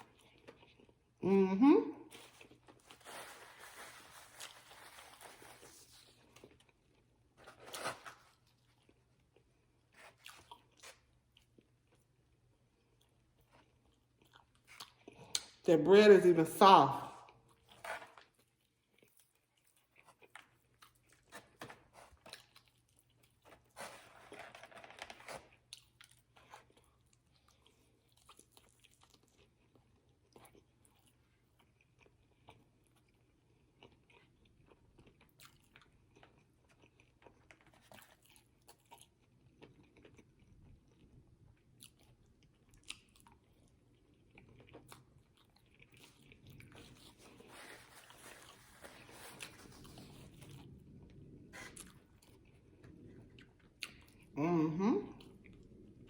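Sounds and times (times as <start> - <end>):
person chewing food: 0.0 - 1.2, 2.1 - 15.6, 17.3 - 54.4
wet mouth sounds and crunches: 25.4 - 54.4.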